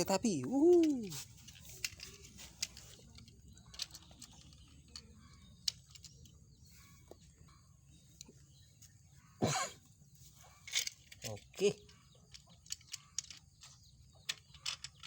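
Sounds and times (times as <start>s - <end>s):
plastic toy pieces clicking: 0.8s - 6.3s, 10.7s - 15.0s.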